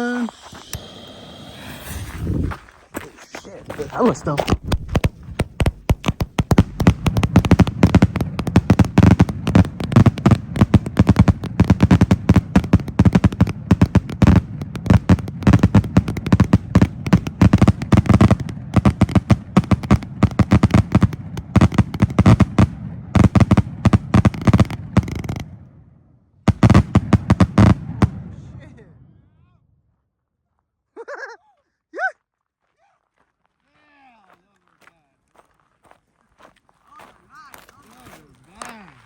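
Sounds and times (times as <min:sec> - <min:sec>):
firework salute bangs: 0:03.8 - 0:25.5.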